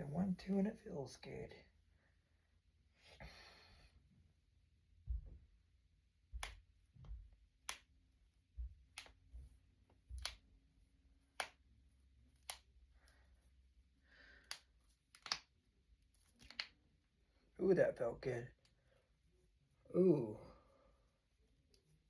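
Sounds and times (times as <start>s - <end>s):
knuckles cracking: 6.3s - 7.9s, 8.8s - 9.4s, 10.1s - 10.5s, 11.3s - 11.6s, 12.4s - 13.2s, 14.3s - 16.8s.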